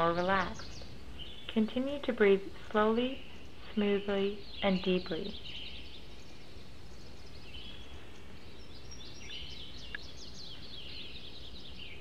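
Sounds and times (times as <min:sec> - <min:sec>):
small birds chirping: 0:00.0 - 0:12.0
steady low background noise: 0:00.0 - 0:12.0.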